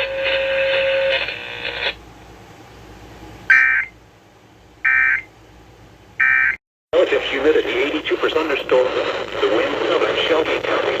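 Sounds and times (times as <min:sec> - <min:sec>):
buzzy digital warbles: 0:03.5 - 0:03.9.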